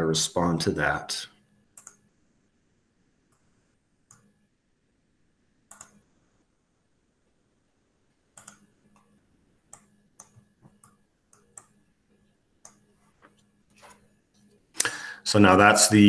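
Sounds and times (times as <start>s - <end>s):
mouse and keyboard clicks: 1.8s - 2.0s, 5.7s - 6.0s, 8.4s - 9.1s.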